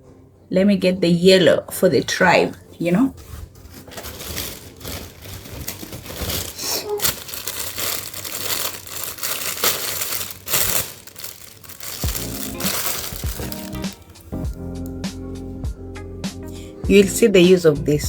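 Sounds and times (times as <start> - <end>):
packaging crinkling: 3.2 - 15.0.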